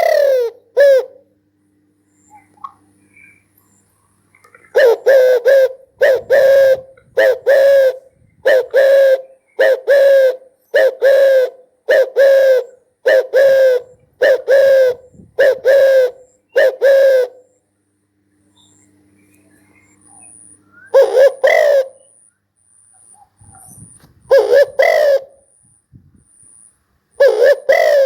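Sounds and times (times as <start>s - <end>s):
dove cooing: 0.0s - 1.3s, 4.4s - 17.6s, 20.9s - 22.2s, 23.3s - 25.6s, 27.2s - 28.0s.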